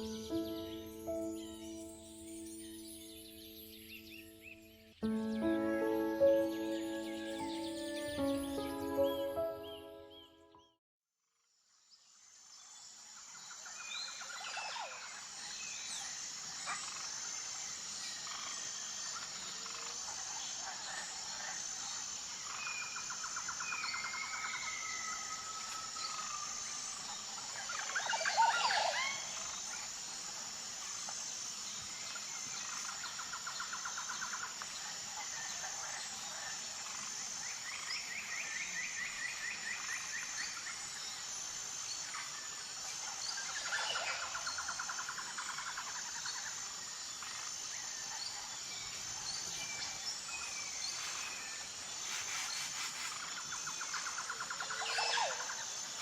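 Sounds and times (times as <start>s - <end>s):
high-pitched insect buzz: 16.6s - 56.0s.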